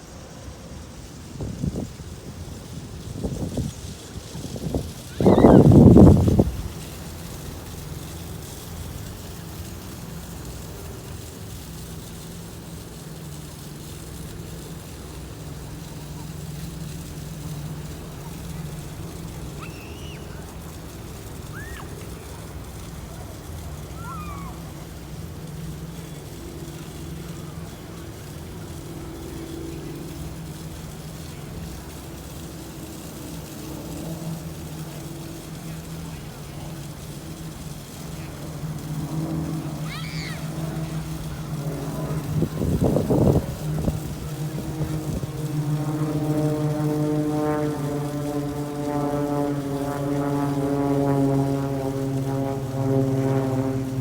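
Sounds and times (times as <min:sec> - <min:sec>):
low engine hum: 0:00.0 - 0:54.0.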